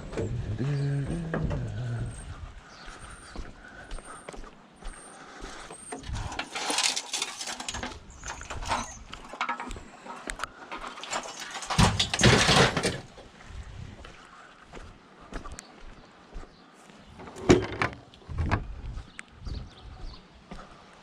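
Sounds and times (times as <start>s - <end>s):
scrap metal rattling and clattering: 6.0s - 13.2s.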